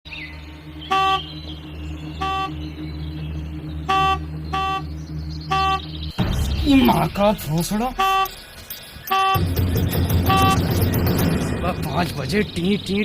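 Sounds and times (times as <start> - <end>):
horn toots: 0.7 - 2.8, 3.7 - 5.9, 7.9 - 8.4, 9.1 - 11.5.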